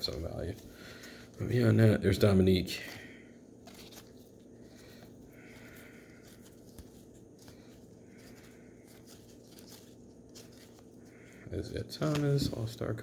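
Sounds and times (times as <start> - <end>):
steady low hum: 0.0 - 13.0
cards rustling and sliding: 2.6 - 13.0.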